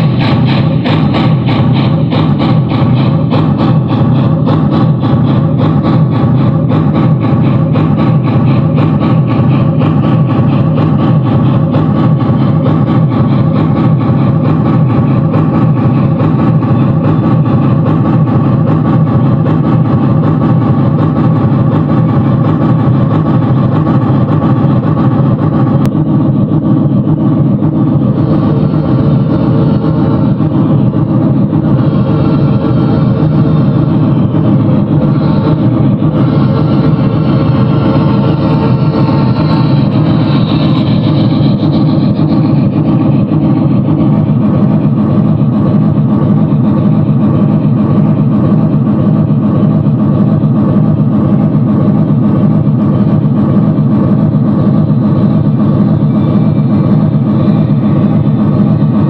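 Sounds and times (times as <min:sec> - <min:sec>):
steam locomotive rumble: 0:00.0 - 0:59.0.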